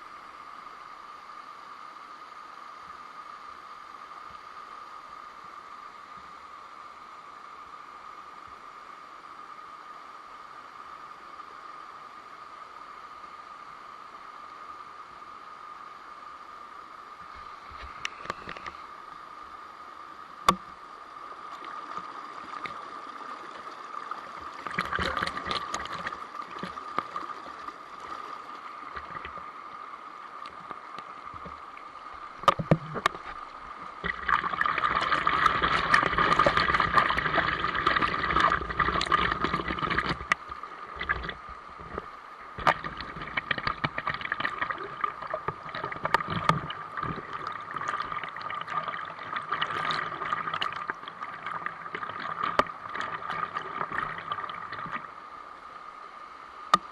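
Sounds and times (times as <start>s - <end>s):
running water: 0.0s - 56.9s
water splashing and crackling: 17.2s - 18.8s, 20.4s - 55.3s.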